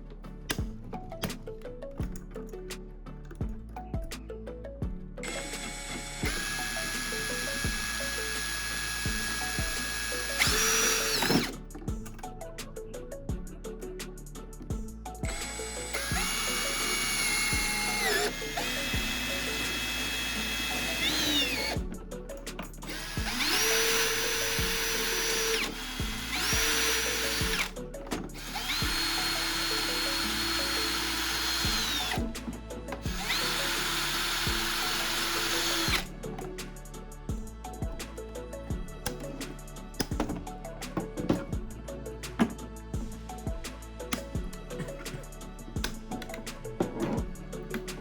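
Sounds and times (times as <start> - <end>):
power tool motor whine: 5.2 - 11.6, 15.3 - 22.0, 22.8 - 36.1.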